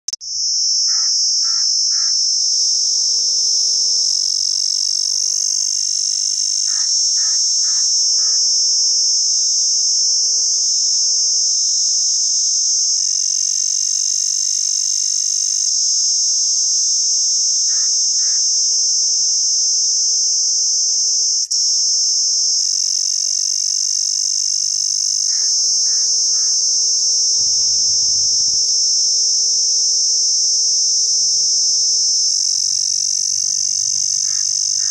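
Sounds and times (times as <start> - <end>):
cicada buzzing: 0.1 - 34.9.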